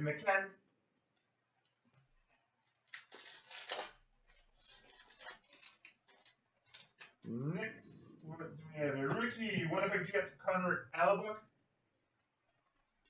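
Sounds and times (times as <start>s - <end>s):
card pack wrapper crinkling: 2.5s - 7.2s
cards being handled: 2.5s - 7.2s.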